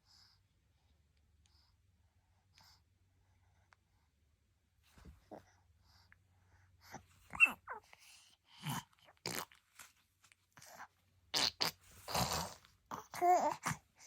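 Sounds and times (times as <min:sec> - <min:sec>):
baby wavering vocal sound: 0:07.3 - 0:07.9, 0:11.4 - 0:13.8.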